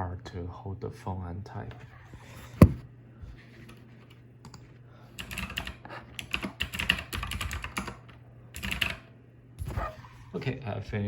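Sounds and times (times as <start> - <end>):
keyboard typing: 5.2 - 9.0.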